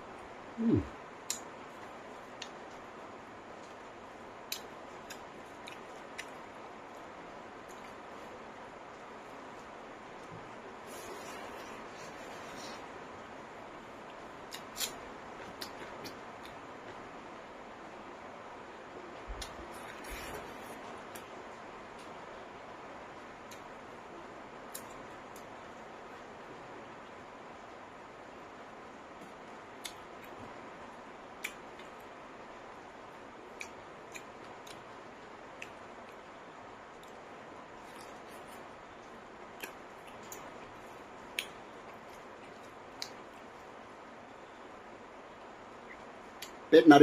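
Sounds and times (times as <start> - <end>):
steady hiss: 0.0 - 47.0
person chewing food: 3.6 - 7.0, 8.9 - 17.0, 19.4 - 21.3, 33.5 - 34.9, 35.5 - 36.2, 36.9 - 43.6
chewing: 37.8 - 43.5
mouth clicks and smacks: 37.8 - 43.5.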